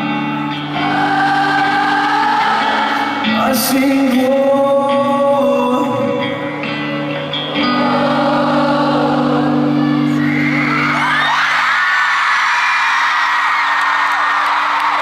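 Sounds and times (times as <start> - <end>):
crowd screaming: 0.0 - 3.6, 7.4 - 15.0
person singing: 0.0 - 10.5.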